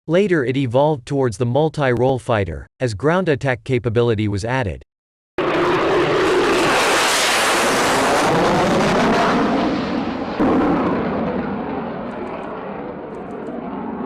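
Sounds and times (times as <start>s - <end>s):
jet fighter engine roaring: 5.4s - 14.0s.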